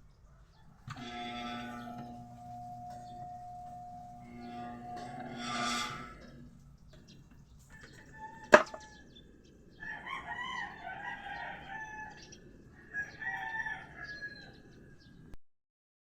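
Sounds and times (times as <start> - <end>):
rooster crowing: 7.7 - 8.9, 9.8 - 14.7.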